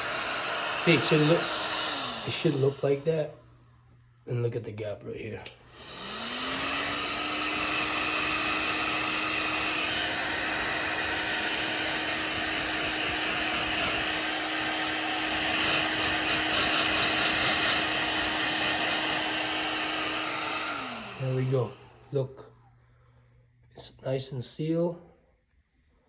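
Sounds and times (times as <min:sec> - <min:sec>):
hiss of blown air: 0:00.0 - 0:03.2
heat gun fan humming: 0:00.0 - 0:24.6.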